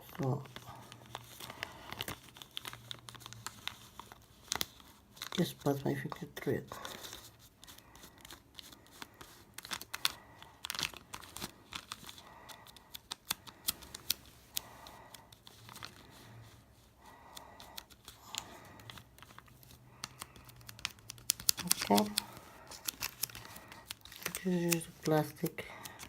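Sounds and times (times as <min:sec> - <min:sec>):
plastic sheet and paper crinkling: 0:00.0 - 0:26.0.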